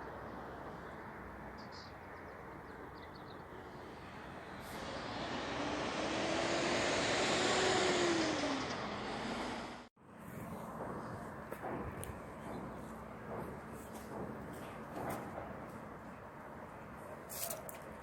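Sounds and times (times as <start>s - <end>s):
engine passing by: 3.4s - 9.9s.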